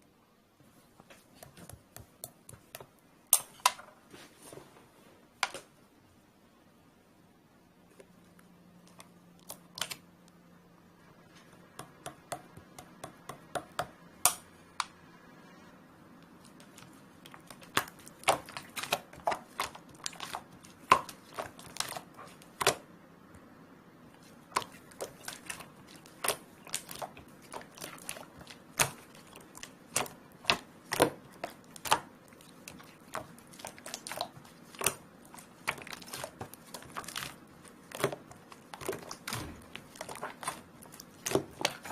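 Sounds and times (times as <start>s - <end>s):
slime clicking and popping: 24.5s - 41.9s.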